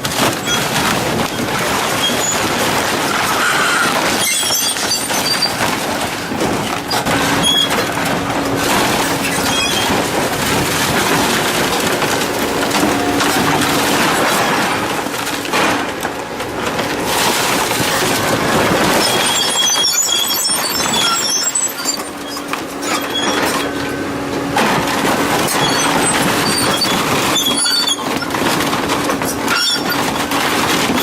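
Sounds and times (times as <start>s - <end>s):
machinery crushing scrap metal: 0.0s - 31.0s
metallic squeals: 3.3s - 5.6s, 6.8s - 10.2s, 18.9s - 24.1s, 25.4s - 28.3s.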